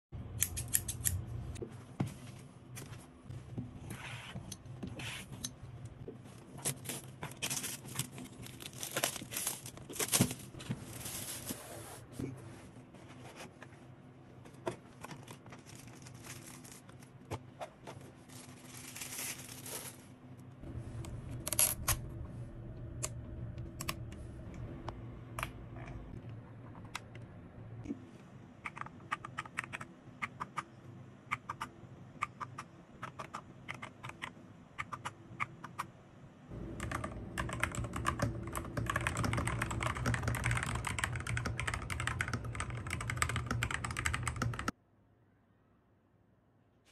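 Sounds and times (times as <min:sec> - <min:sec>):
mechanical keyboard keystrokes: 0:36.7 - 0:44.8.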